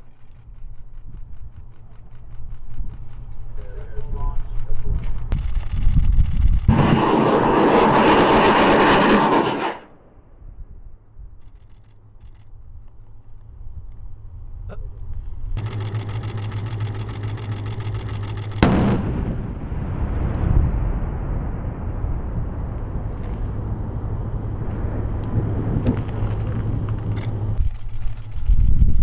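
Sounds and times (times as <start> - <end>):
rapid buzzing rattle: 0.0 - 9.8, 15.6 - 18.8, 26.1 - 29.0
long rolling rumble: 6.5 - 10.0, 15.5 - 27.7
explosive blast: 6.6 - 10.1, 18.6 - 26.2
heavy engine rumbling: 15.6 - 27.6.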